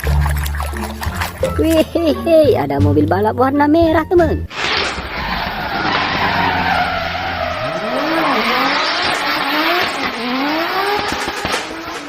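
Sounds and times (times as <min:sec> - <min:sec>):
tyres screeching: 0:04.5 - 0:10.6
race car engine revving: 0:04.7 - 0:12.0.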